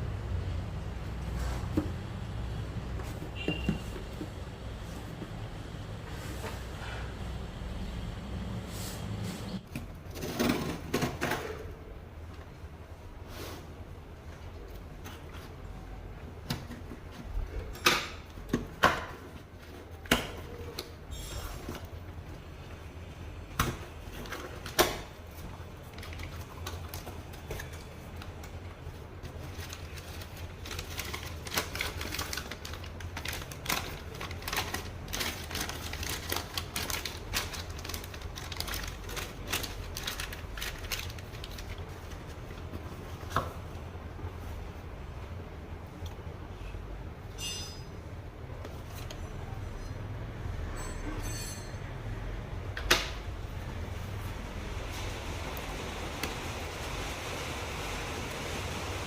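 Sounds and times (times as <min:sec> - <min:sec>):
packaging rustling: 0:24.0 - 0:43.2
packaging clicks and knocks: 0:29.2 - 0:42.4.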